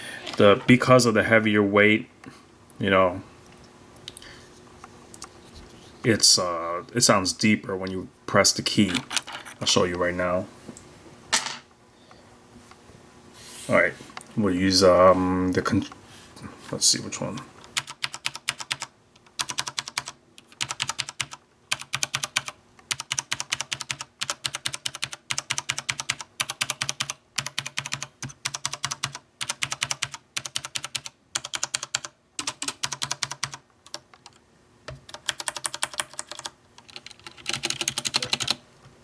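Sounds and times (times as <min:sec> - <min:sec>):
mechanical keyboard typing: 0:17.8 - 0:38.6.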